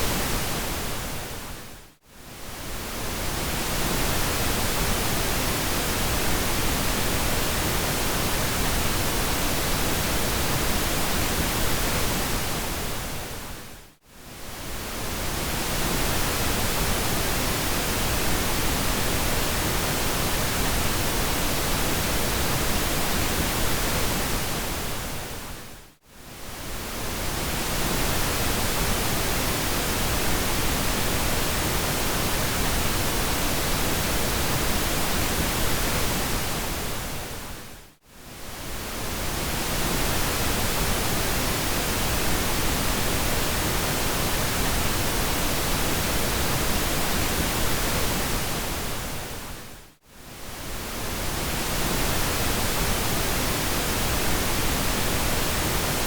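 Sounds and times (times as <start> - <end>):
pink noise hiss: 38.2 - 56.0.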